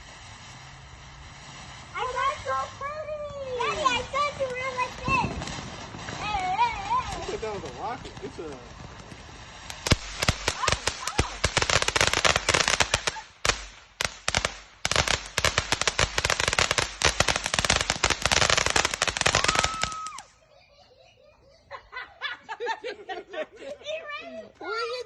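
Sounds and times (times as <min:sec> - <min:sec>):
fireworks popping: 0:00.0 - 0:20.4
voices: 0:01.9 - 0:08.8, 0:10.5 - 0:11.5.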